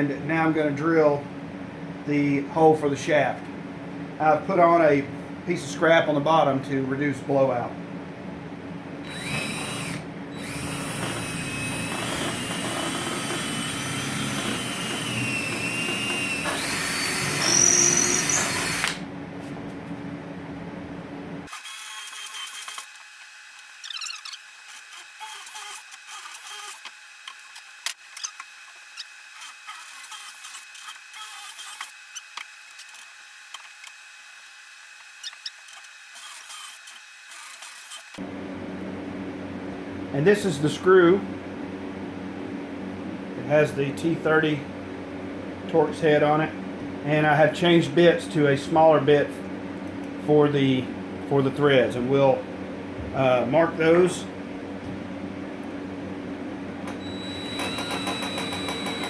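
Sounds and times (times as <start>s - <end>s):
electric drill boring into wood: 9.0s - 19.0s, 21.5s - 27.4s, 33.4s - 38.2s, 56.9s - 59.0s.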